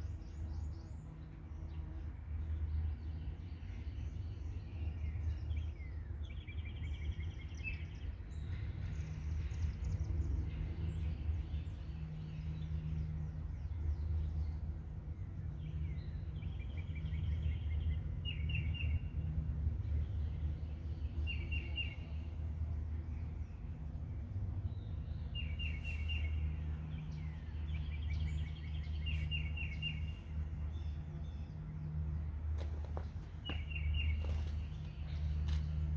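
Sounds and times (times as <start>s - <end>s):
steady low rumble: 0.0s - 35.9s
small birds chirping: 15.6s - 35.9s.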